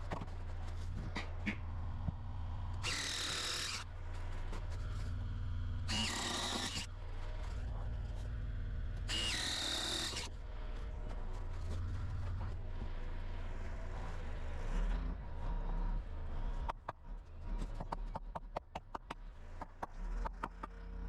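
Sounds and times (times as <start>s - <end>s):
steady low rumble: 0.0s - 3.2s, 3.8s - 9.3s, 10.2s - 21.0s
power drill boring wood: 2.8s - 3.8s, 5.9s - 6.9s, 9.1s - 10.3s.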